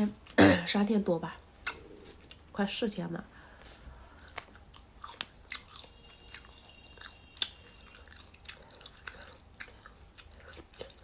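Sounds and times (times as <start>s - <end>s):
chewing snack mouth clicks: 4.2s - 11.0s.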